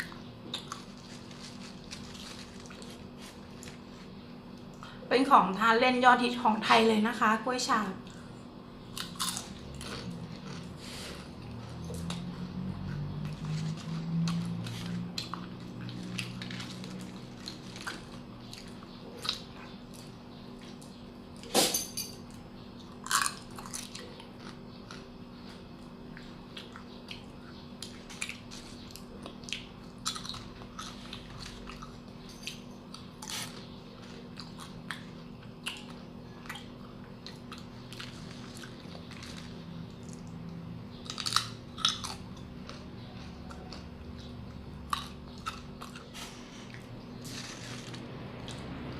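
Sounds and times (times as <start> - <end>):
crunchy chewing of chips: 0.0 - 5.0, 8.0 - 21.7, 22.3 - 48.9.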